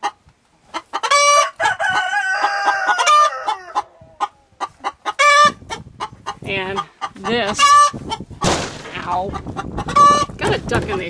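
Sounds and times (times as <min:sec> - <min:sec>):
chickens clucking: 0:00.0 - 0:11.0
rooster crowing: 0:01.1 - 0:04.0.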